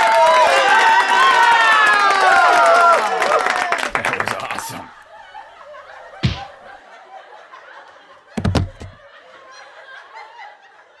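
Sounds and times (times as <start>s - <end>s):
dull thump: 6.2s - 6.6s, 8.4s - 9.0s
quick double knock: 6.2s - 6.6s, 8.4s - 9.0s.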